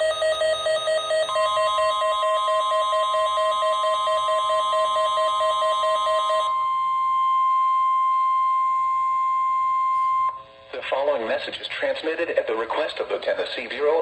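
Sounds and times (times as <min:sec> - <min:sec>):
rapidly pulsing alarm tone: 0:00.0 - 0:10.6
steady alarm tone: 0:00.0 - 0:10.7.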